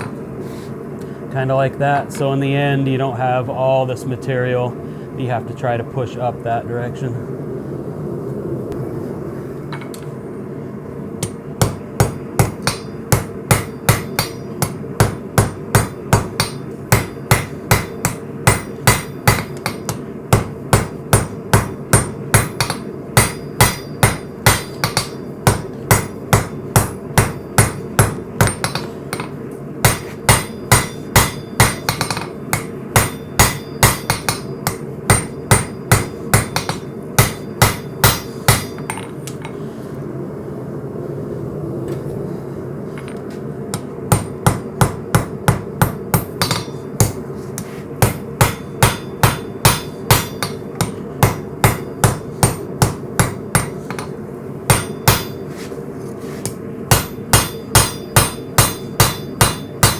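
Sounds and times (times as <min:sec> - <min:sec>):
hammer ringing on anvil: 0:11.2 - 0:39.2, 0:44.1 - 0:47.2, 0:48.0 - 0:55.4, 0:56.9 - 0:59.9.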